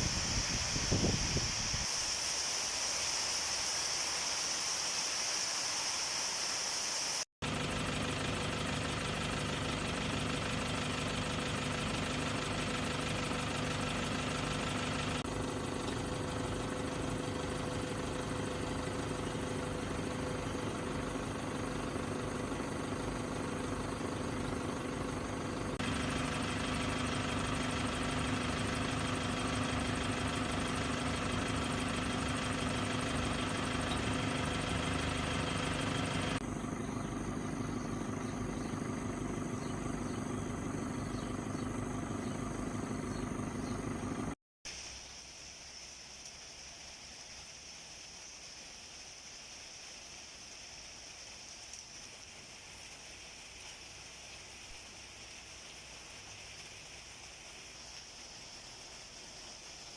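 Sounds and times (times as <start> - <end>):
high hiss: 0.0 - 7.3, 44.7 - 59.9
engine running: 7.4 - 44.4.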